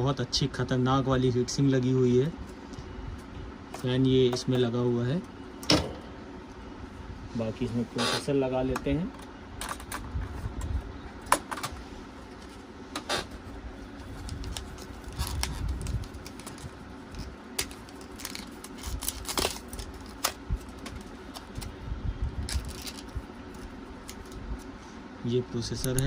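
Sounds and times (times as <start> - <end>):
steady low hum: 0.0 - 26.0
hands handling computer parts: 11.2 - 21.8.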